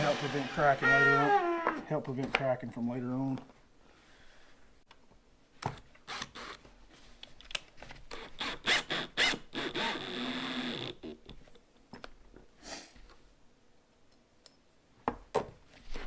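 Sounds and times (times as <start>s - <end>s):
drill grinding fiberglass: 0.0s - 1.8s.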